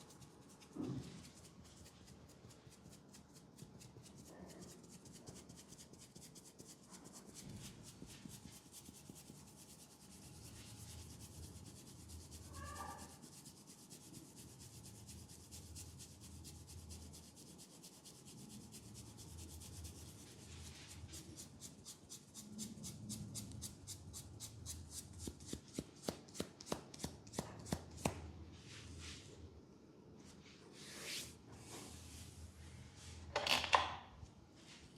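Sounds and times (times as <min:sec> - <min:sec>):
hands rubbing skin: 0:17.1 - 0:29.3.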